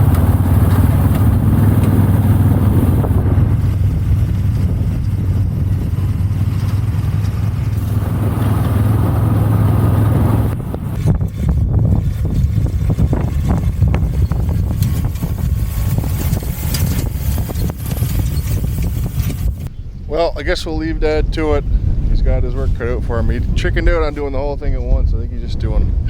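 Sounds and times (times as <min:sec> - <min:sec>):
tractor engine under load: 0:00.0 - 0:19.7
rough irregular crackling: 0:00.0 - 0:24.6.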